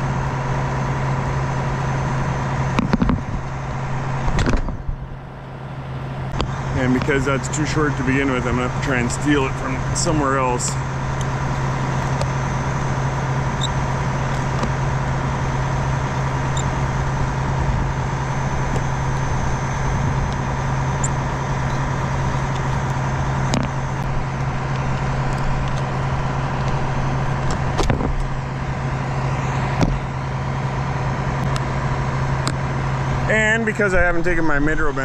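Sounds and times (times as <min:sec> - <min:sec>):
tractor engine idling: 0:00.0 - 0:35.0.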